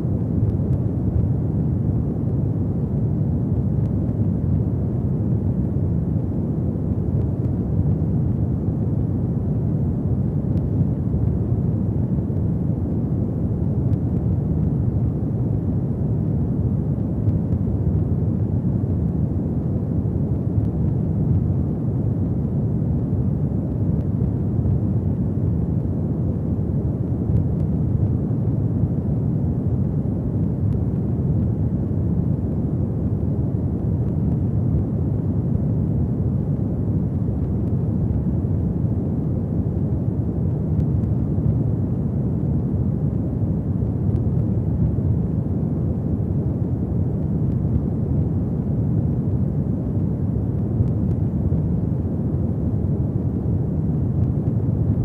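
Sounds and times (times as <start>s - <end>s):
fire burning with low rumble: 0.0s - 55.0s.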